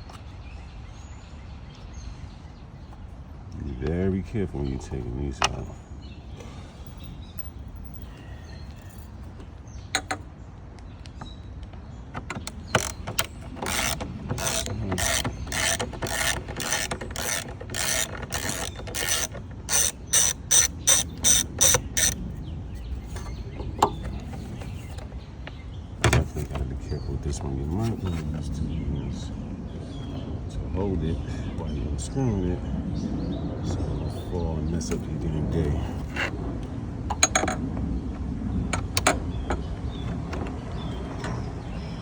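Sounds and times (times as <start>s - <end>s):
hand ratchet clicking: 12.4s - 22.2s.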